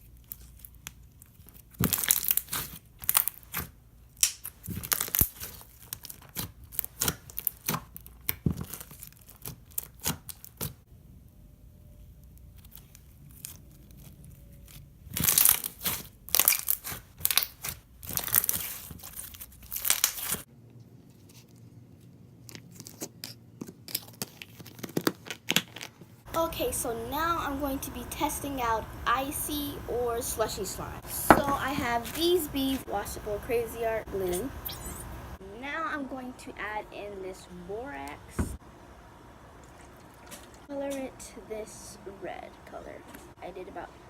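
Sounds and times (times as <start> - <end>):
foam slime crackling and popping: 0.0 - 10.8, 12.1 - 20.5.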